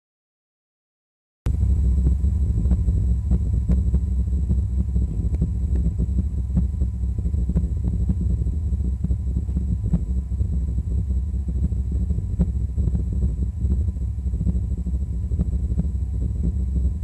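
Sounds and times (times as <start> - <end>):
low rumbling hum: 1.5 - 17.0.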